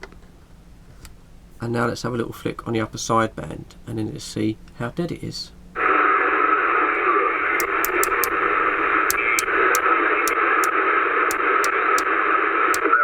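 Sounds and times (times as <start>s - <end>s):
radio knob clicks: 7.6s - 9.9s.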